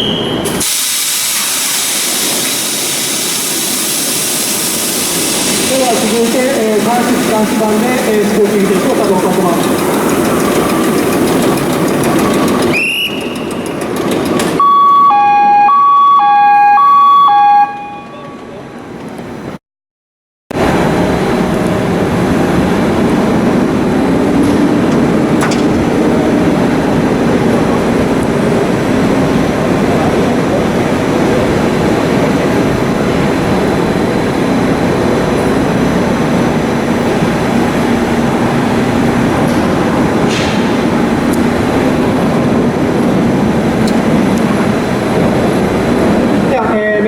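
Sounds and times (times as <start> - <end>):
diesel engine running: 5.3 - 14.6.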